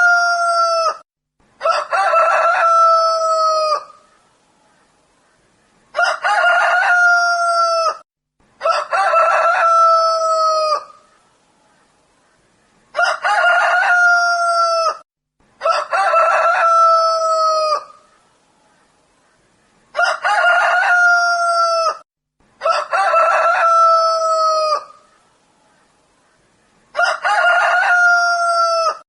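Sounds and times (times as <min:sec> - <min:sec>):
rooster crowing: 0:00.0 - 0:01.0, 0:01.6 - 0:04.0, 0:06.0 - 0:08.0, 0:08.6 - 0:11.0, 0:13.0 - 0:15.0, 0:15.6 - 0:18.0, 0:20.0 - 0:22.0, 0:22.6 - 0:25.0, 0:27.0 - 0:29.0.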